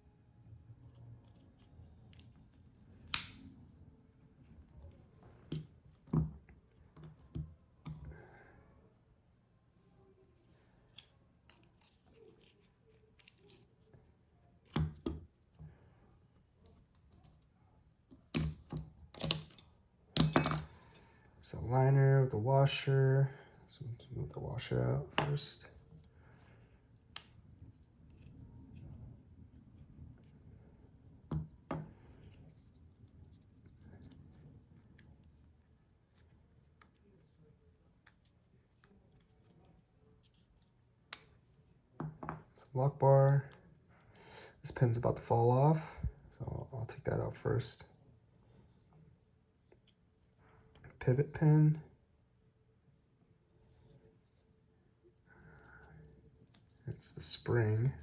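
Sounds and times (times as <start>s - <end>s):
knife metal parts clicking: 18.4s - 20.7s.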